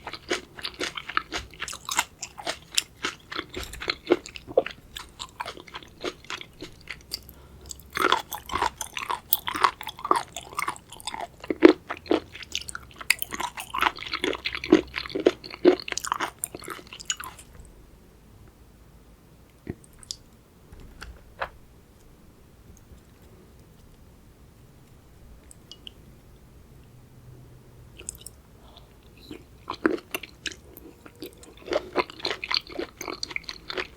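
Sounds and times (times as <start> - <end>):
crunchy chewing: 0.0 - 17.5, 29.2 - 33.9.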